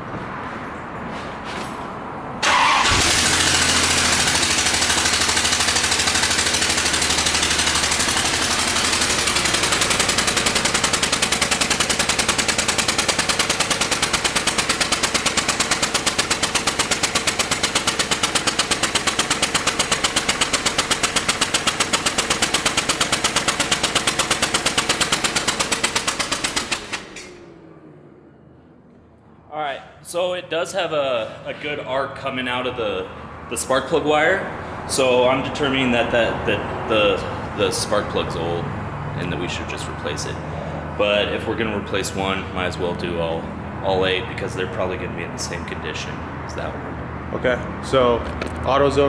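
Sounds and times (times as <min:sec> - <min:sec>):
engine cranking on starter: 0:02.4 - 0:27.7.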